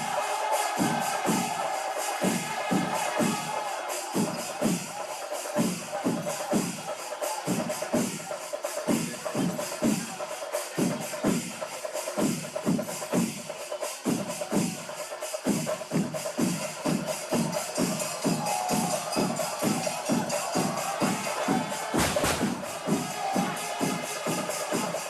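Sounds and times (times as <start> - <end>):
cymbals shimmering: 0.0 - 25.0
drums struck: 16.9 - 23.5.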